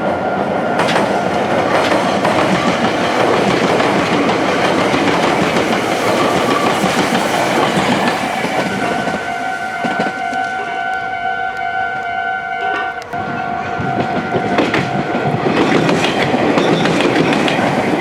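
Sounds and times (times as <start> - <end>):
train wheels clattering over rails: 0.7 - 18.0
two-note crossing warning bell: 8.8 - 15.2.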